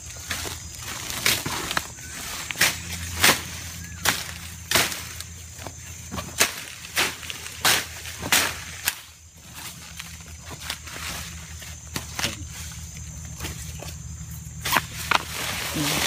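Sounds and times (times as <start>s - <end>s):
digging tool striking soil: 14.6s - 16.0s.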